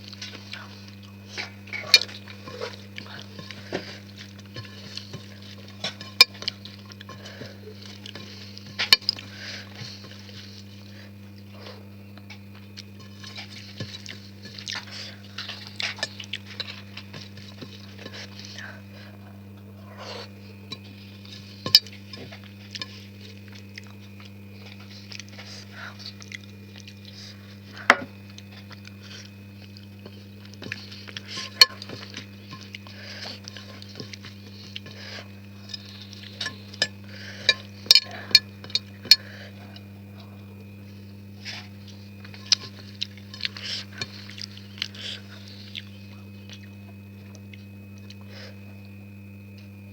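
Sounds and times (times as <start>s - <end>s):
wet chewing: 0.0s - 49.7s
steady low hum: 0.0s - 49.9s
dishes clicking and clinking: 1.3s - 10.5s, 12.2s - 18.6s, 20.7s - 23.7s, 30.0s - 35.0s, 35.6s - 39.3s, 42.2s - 45.0s.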